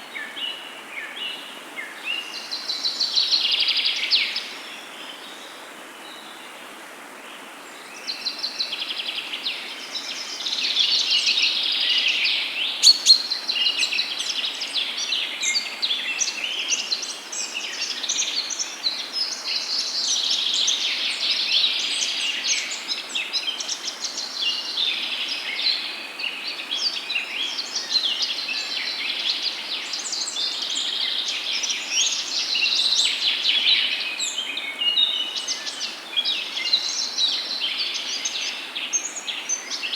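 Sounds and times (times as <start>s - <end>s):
songbirds chirping and singing: 11.8s - 21.2s.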